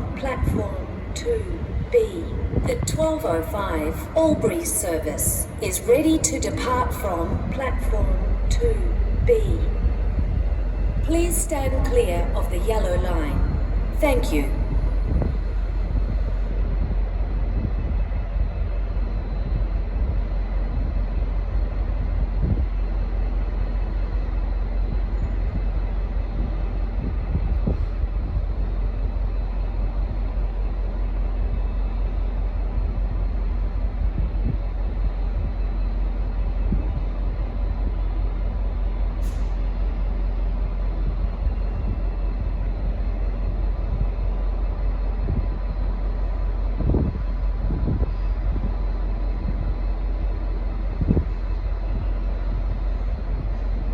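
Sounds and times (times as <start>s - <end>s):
diesel locomotive idling: 0.0s - 27.0s, 27.9s - 53.9s.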